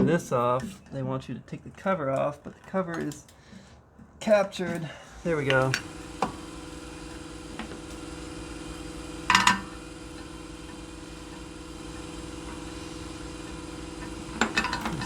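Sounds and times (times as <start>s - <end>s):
machine hum: 5.2s - 15.0s.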